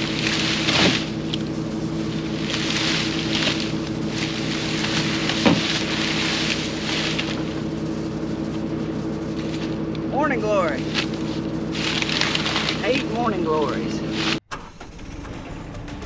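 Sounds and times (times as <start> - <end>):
hiss: 0.0 - 9.8
engine running: 0.0 - 16.0.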